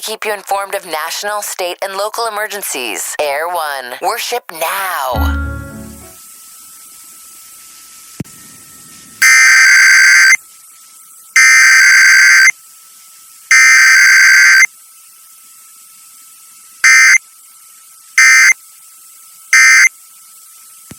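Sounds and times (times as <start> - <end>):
two-tone digital screech bursts: 16.8 - 17.2, 18.2 - 18.5, 19.6 - 19.9.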